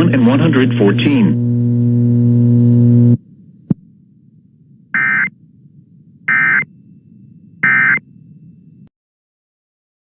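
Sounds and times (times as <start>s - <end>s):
faint low hum: 0.0s - 8.9s
digital data tone bursts: 5.0s - 5.3s, 6.3s - 6.7s, 7.6s - 8.0s.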